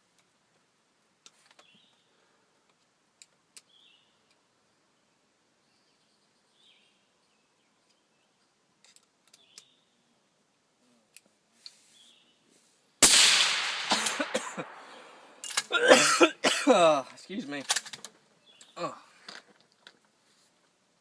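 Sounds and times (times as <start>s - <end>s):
bird chirps: 18.4s - 18.8s.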